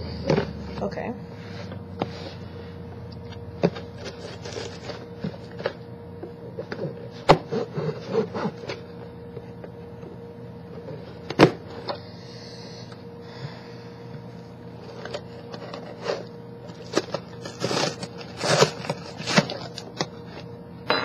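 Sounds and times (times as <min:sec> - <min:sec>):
knife scraping packaging: 0:03.7 - 0:05.8, 0:06.7 - 0:08.8, 0:14.8 - 0:20.4.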